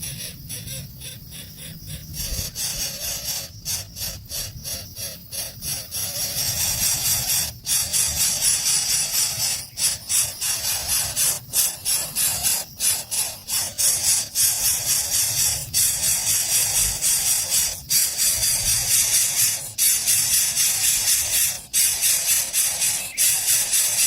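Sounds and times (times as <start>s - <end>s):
nestlings begging calls: 0.0s - 24.0s.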